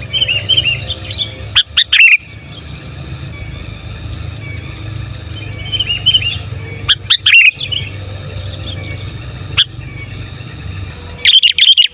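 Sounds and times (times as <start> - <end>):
bird singing warbled phrases: 0.0 - 11.9
steady low hum: 0.0 - 11.9.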